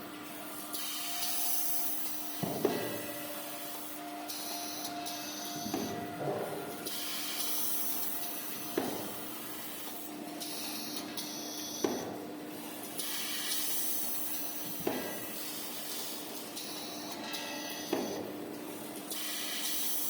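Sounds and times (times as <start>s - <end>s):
band saw motor hum with hissing: 0.1s - 11.0s.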